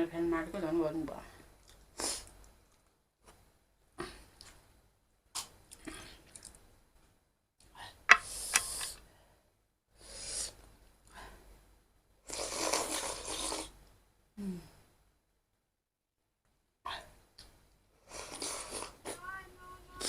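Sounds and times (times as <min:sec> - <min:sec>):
slurps and bites: 0:12.3 - 0:13.8.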